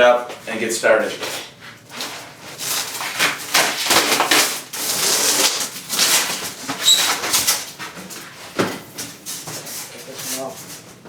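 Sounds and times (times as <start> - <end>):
foam panels rustling and scraping: 1.0 - 11.0
high squeak: 6.8 - 7.4.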